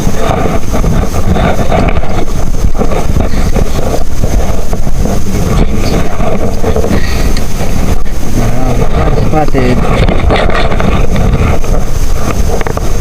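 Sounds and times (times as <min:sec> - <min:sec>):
strong wind buffeting microphone: 0:00.0 - 0:13.0.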